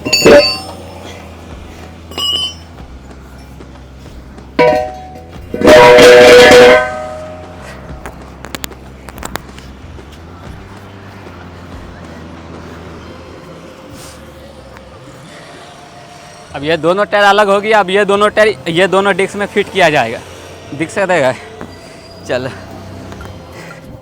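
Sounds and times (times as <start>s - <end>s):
rattling ringing metal burst: 0.0s - 0.9s, 4.6s - 7.6s
metallic clanks on wheel rim: 0.0s - 1.2s, 2.0s - 3.7s, 4.6s - 9.7s.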